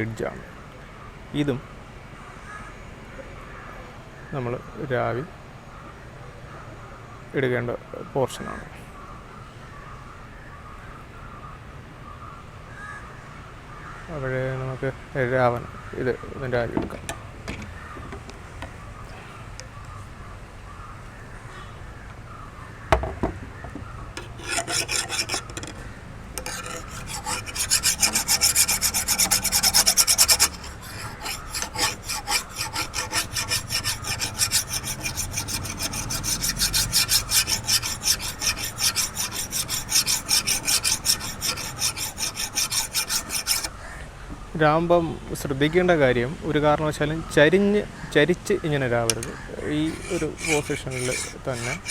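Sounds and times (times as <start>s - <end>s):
file rasping on steel blade: 24.2s - 43.8s, 49.8s - 51.9s.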